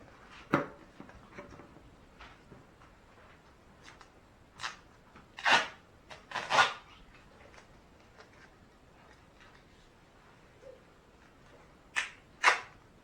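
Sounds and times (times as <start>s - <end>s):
tape ripped off a roll: 5.4s - 6.8s, 12.0s - 12.7s.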